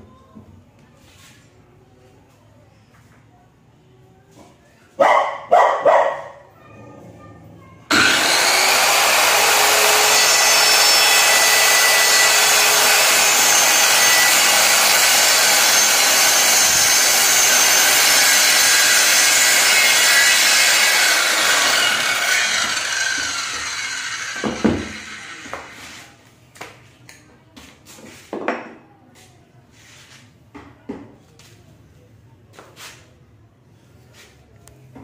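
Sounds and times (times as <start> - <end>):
circular saw cutting wood: 7.9 - 26.1.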